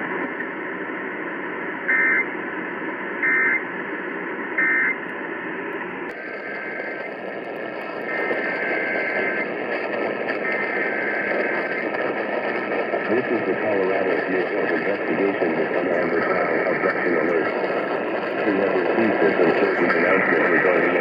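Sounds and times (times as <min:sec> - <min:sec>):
radio static hiss: 0:00.0 - 0:21.0
buzzy data-tone bursts: 0:10.4 - 0:11.9.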